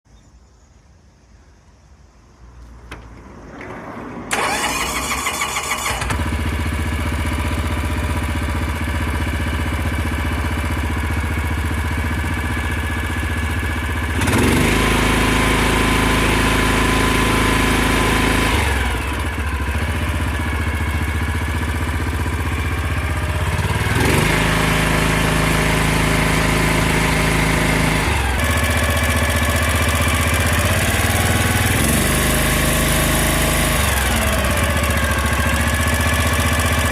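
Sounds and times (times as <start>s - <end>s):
engine running and revving: 2.9s - 36.9s
engine starter cranking: 3.0s - 6.5s.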